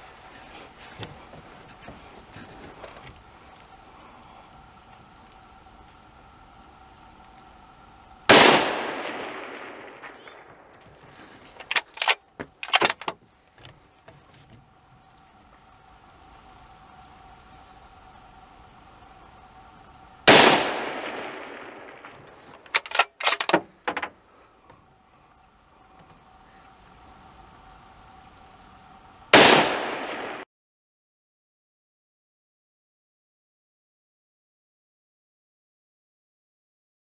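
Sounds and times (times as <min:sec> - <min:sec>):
rifle shots echoing: 0:08.3 - 0:10.8, 0:20.2 - 0:23.6, 0:29.3 - 0:30.4
rifle action metallic clicks: 0:10.8 - 0:13.2, 0:22.0 - 0:24.1.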